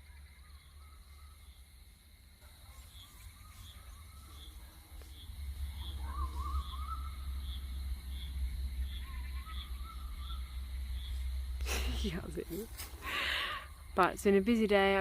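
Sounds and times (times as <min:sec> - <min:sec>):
faint high chirp: 0:05.7 - 0:07.8.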